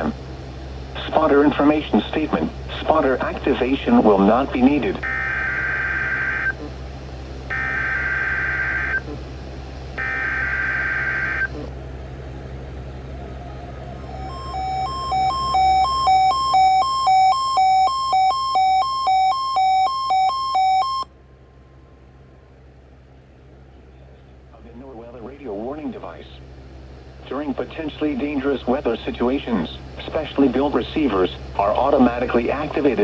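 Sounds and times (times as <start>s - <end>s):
screeching digital data tones: 5.0s - 6.7s, 7.5s - 9.2s, 10.0s - 11.7s, 14.0s - 21.1s
rapid two-pitch electronic beeping: 14.1s - 21.1s.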